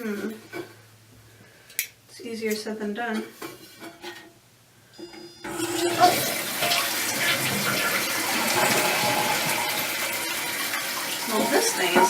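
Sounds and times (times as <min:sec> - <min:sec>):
toilet flushing: 0:05.5 - 0:12.0.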